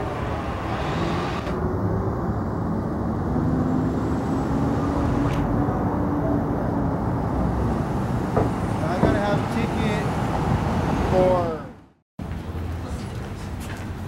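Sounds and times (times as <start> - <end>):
heavy vehicle engine rumble: 5.1 - 14.0.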